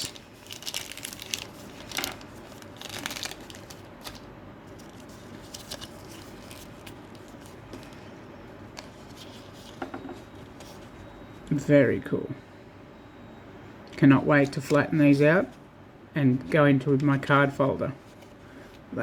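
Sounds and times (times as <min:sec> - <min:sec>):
plastic packaging crinkling: 0:00.0 - 0:08.1.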